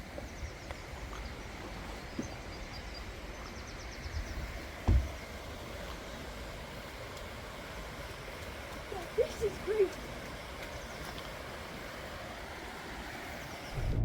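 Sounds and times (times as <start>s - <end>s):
dull thump: 4.8s - 5.3s.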